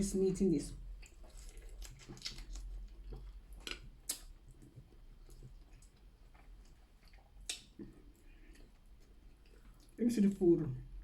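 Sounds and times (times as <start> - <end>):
wet chewing: 1.0 - 10.0.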